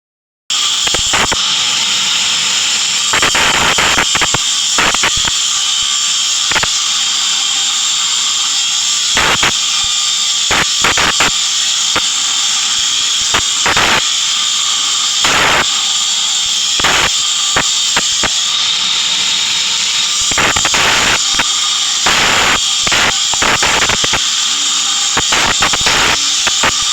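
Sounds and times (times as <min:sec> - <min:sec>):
welding arc hissing: 0:00.5 - 0:26.9
crackles and pops of spatter: 0:00.8 - 0:01.4, 0:03.0 - 0:06.9, 0:09.0 - 0:12.6, 0:13.2 - 0:14.1, 0:15.1 - 0:18.4, 0:20.2 - 0:24.5, 0:25.1 - 0:26.9.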